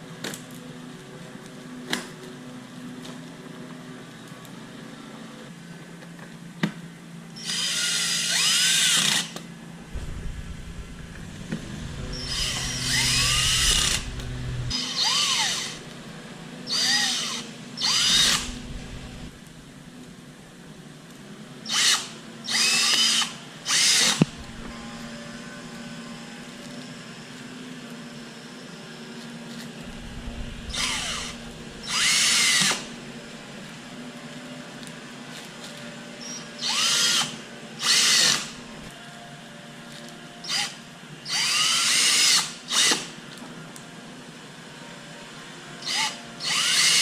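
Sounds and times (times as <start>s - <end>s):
power drill whining: 7.4s - 20.2s, 21.6s - 26.8s, 29.8s - 33.6s, 36.2s - 38.9s, 40.4s - 43.1s, 45.8s - 47.0s.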